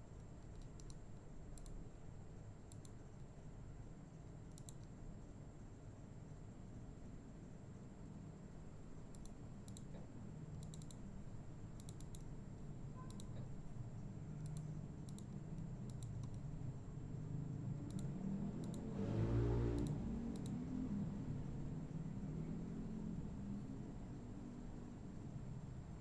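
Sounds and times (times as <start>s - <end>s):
steady low hum: 0.0s - 26.0s
computer mouse clicks: 0.2s - 1.8s, 2.6s - 3.3s, 4.2s - 5.0s, 9.1s - 11.1s, 11.8s - 13.6s, 14.4s - 16.5s, 17.8s - 19.0s, 19.7s - 20.7s.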